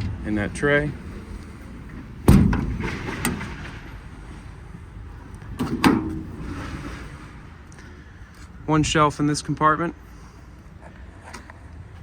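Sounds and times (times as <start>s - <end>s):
metal compartment doors clunking: 0.0s - 7.0s.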